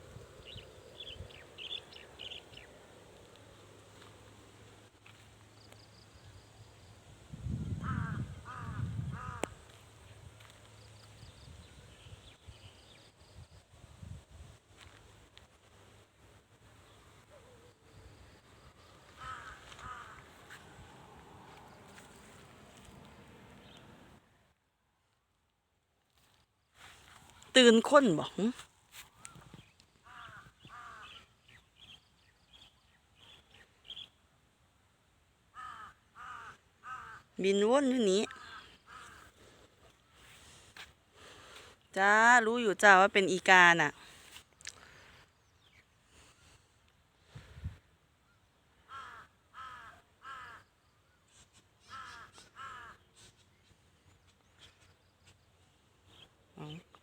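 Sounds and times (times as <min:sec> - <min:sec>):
small birds chirping: 0:00.4 - 0:02.8
crow cawing: 0:07.8 - 0:09.6, 0:19.1 - 0:20.7, 0:30.0 - 0:31.3, 0:35.5 - 0:37.3, 0:38.3 - 0:39.4, 0:48.8 - 0:50.9, 0:51.8 - 0:53.1.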